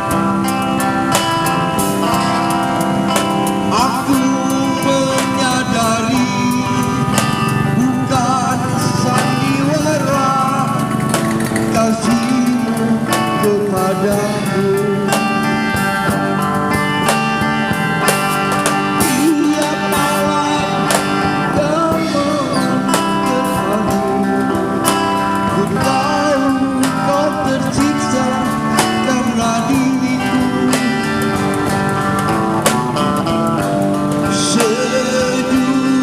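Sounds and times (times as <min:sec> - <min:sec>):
band playing pop ballad: 0:00.0 - 0:36.0
guitars picked and strummed: 0:00.0 - 0:36.0.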